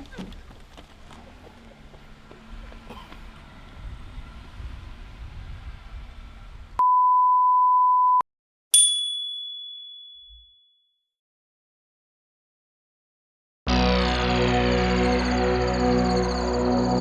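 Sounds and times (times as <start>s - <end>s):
high bright ding: 8.8s - 10.5s.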